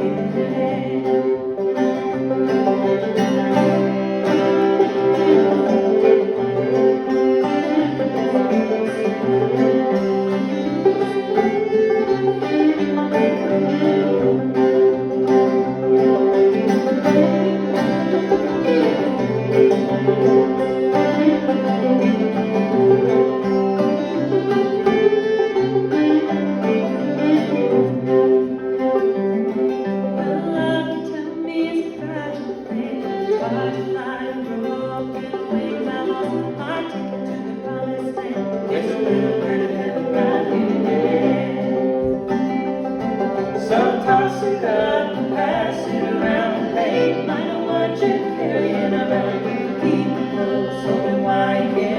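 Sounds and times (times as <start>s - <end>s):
banjo: 0.0s - 51.9s
fiddle melody: 0.0s - 51.9s.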